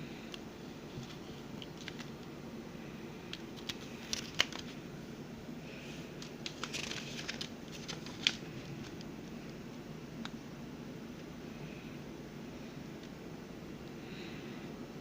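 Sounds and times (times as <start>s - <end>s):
paper rustling: 0.9s - 2.1s, 3.3s - 4.8s, 6.2s - 9.1s.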